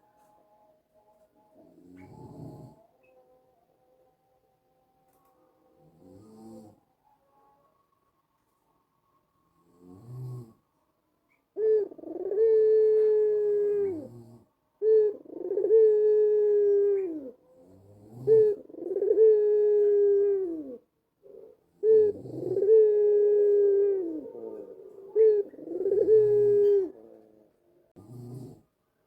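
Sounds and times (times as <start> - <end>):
dove cooing: 1.6 - 3.1, 11.3 - 27.4.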